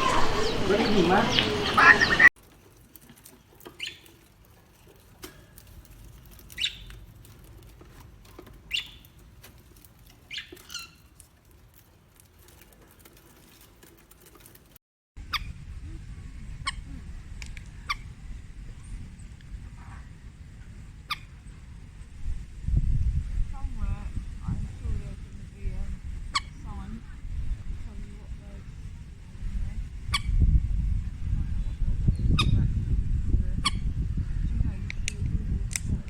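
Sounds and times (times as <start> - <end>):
small animal chirps: 8.7 - 9.1
low rumble: 15.2 - 36.0.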